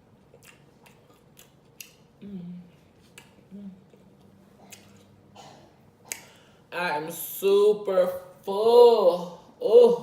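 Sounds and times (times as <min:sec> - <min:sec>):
wet chewing mouth clicks: 0:00.3 - 0:02.1.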